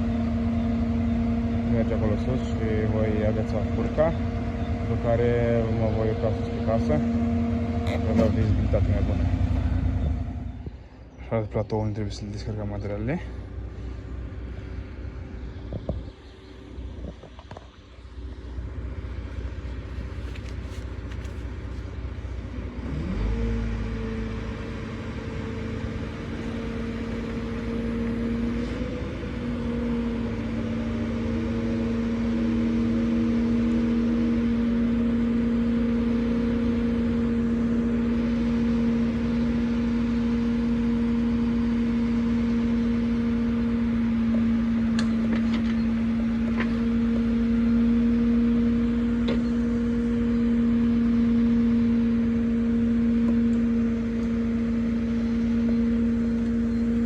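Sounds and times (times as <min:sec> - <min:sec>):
crane engine and hydraulics whine: 0:00.0 - 0:57.0.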